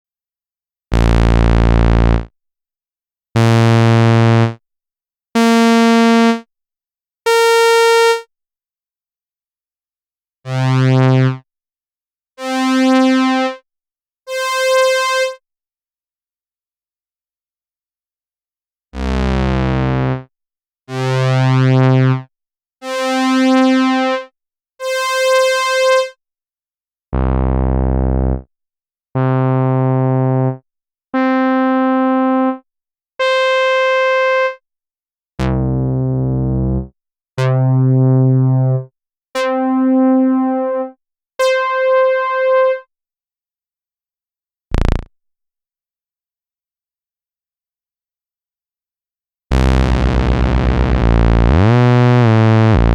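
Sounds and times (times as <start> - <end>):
bass synthesizer notes: 1.0 - 2.2, 44.8 - 45.1, 49.5 - 52.9.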